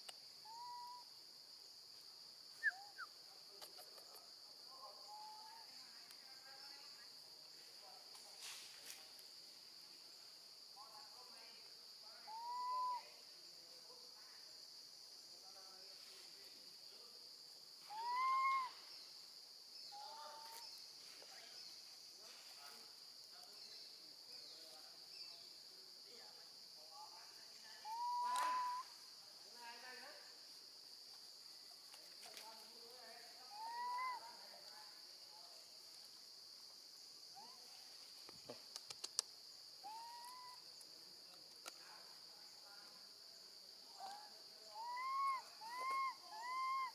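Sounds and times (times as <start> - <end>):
high insect drone: 0.0 - 46.9
baby monkey crying: 33.6 - 34.2.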